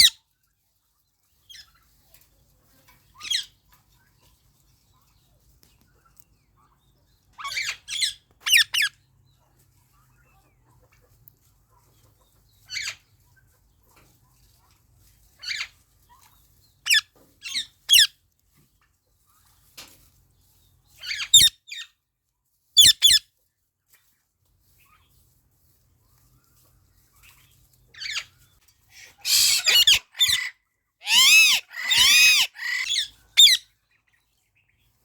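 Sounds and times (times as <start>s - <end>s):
parrots chirping shrilly: 7.4s - 8.9s, 16.9s - 18.1s, 21.0s - 21.5s, 22.8s - 23.2s, 29.0s - 33.6s.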